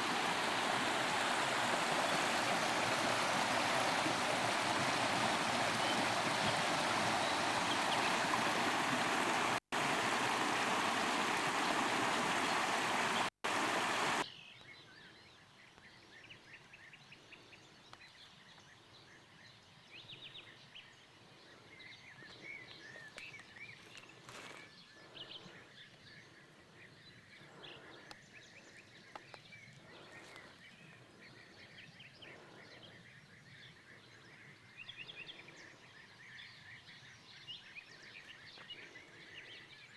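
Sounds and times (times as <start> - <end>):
birds chirping: 0.0 - 14.2
rushing storm water and rain: 0.0 - 14.2.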